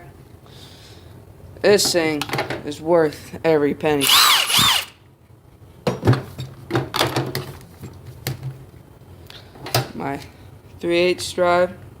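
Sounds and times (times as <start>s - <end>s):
loud whir: 4.0s - 5.0s.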